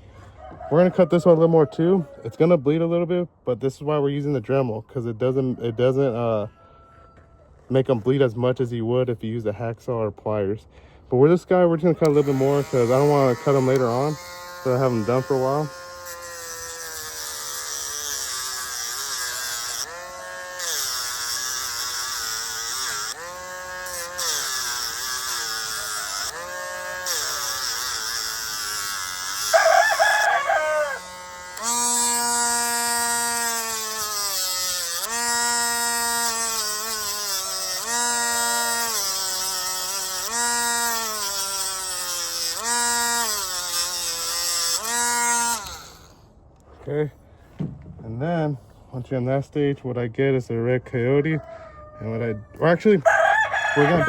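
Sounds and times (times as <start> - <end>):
rotary tool grinding: 11.0 - 47.9, 52.0 - 54.0
rooster call: 29.5 - 31.3, 51.4 - 54.0.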